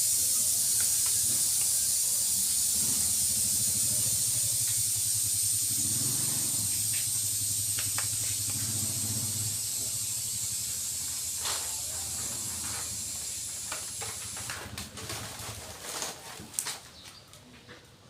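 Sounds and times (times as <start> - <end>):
air blower hissing: 0.0 - 15.8
low motor hum: 2.3 - 15.6.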